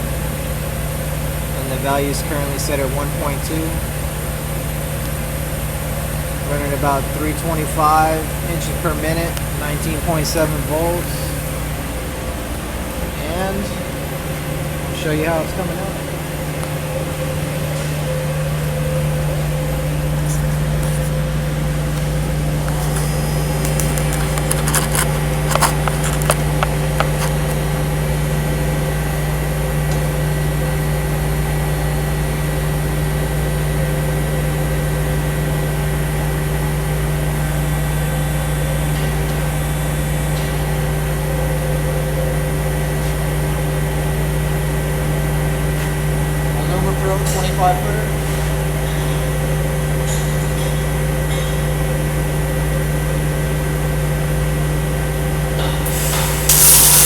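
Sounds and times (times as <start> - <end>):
welding arc buzzing: 18.3 - 28.4, 55.8 - 57.0
welding arc crackles: 20.1 - 27.9, 55.9 - 57.0.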